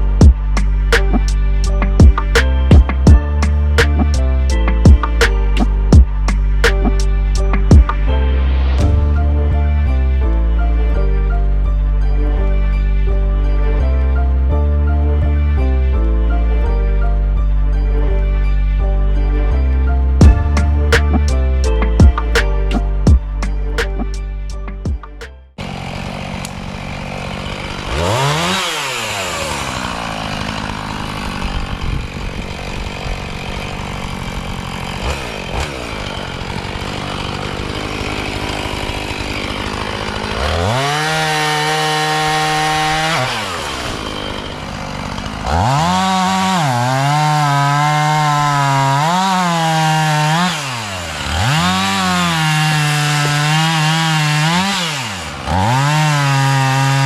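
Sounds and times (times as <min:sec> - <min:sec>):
chainsaw revving: 0:00.0 - 0:09.1, 0:20.2 - 0:24.2, 0:25.6 - 0:57.0.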